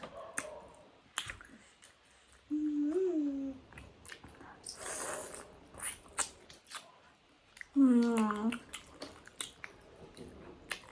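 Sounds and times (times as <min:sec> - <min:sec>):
mouth clicks and smacks: 0:00.0 - 0:02.5, 0:03.7 - 0:10.9
person chewing food: 0:00.0 - 0:02.5, 0:03.7 - 0:10.9
person humming: 0:02.5 - 0:03.6.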